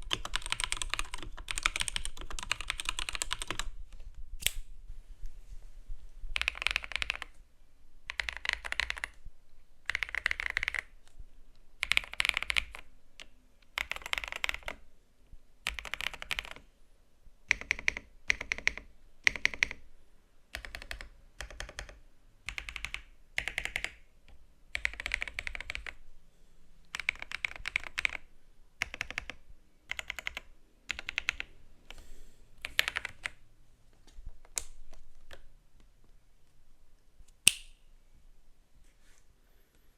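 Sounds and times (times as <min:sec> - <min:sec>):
computer keyboard typing: 0:00.0 - 0:03.8, 0:06.4 - 0:07.4, 0:08.1 - 0:09.2, 0:09.8 - 0:11.0, 0:11.8 - 0:14.8, 0:15.6 - 0:16.6, 0:17.5 - 0:19.8, 0:20.5 - 0:24.0, 0:24.7 - 0:26.0, 0:26.9 - 0:32.0, 0:32.6 - 0:33.4.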